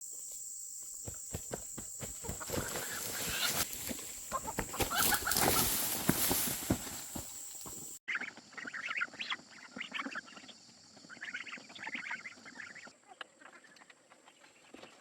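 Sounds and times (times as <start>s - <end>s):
chickens clucking and squawking: 2.2s - 6.5s
rustling: 2.4s - 8.0s.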